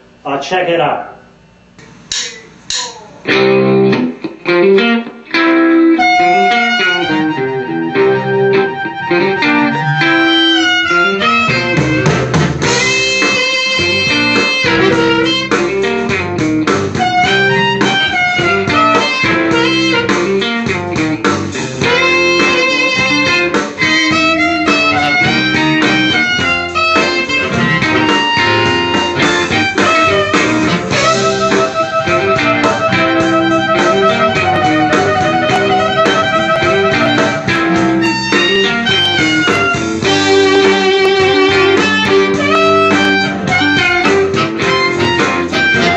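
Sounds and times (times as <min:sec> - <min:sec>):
blues backing track with guitar: 0:01.8 - 0:45.9
amplified blues harmonica: 0:03.3 - 0:45.9.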